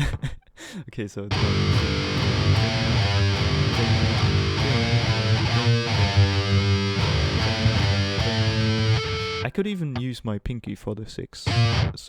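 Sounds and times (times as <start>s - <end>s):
distorted electric guitar riff: 1.3s - 9.5s, 11.5s - 12.0s.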